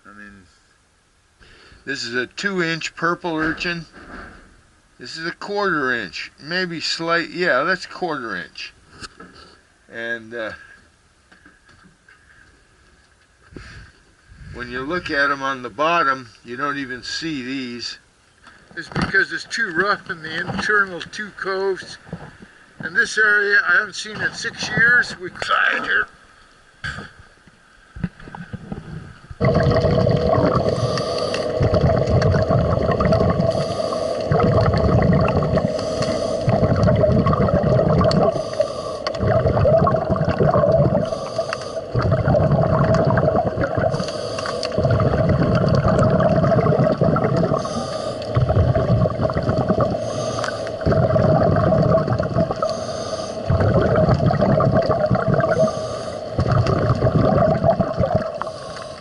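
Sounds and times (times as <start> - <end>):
steady hum: 0.0 - 59.0
regulator inhale hiss: 1.4 - 1.9, 13.5 - 14.6, 30.6 - 31.7, 33.4 - 34.4, 35.6 - 36.6, 38.2 - 39.3, 40.9 - 42.0, 43.9 - 44.8, 47.5 - 48.4, 49.9 - 51.0, 52.6 - 53.5, 55.5 - 56.6, 58.3 - 59.0
bubbles rumbling: 28.5 - 58.8.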